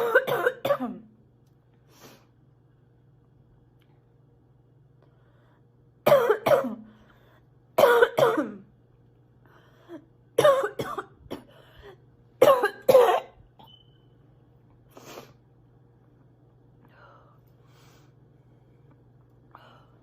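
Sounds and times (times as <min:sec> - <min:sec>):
girl coughing: 0:00.0 - 0:01.1, 0:06.0 - 0:06.9, 0:07.8 - 0:08.7, 0:10.4 - 0:11.6, 0:12.4 - 0:13.4
faint low hum: 0:00.0 - 0:20.0.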